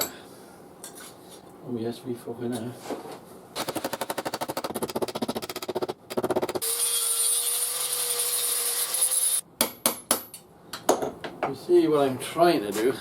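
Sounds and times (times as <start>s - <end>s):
sheet metal worked by hand: 3.6s - 11.1s.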